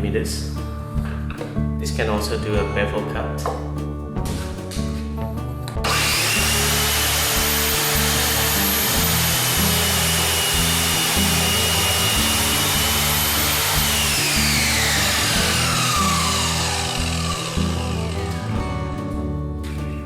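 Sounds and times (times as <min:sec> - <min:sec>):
mitre saw motor whine: 0:05.8 - 0:18.8.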